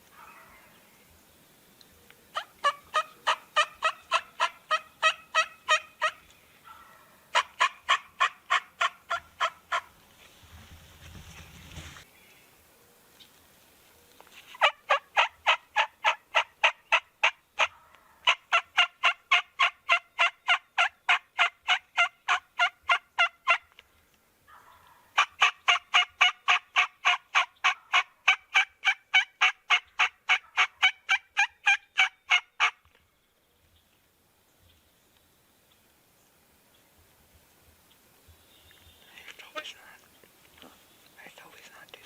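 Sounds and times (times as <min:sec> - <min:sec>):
turkey yelping: 0:02.3 - 0:09.9, 0:14.6 - 0:23.6, 0:24.5 - 0:32.8.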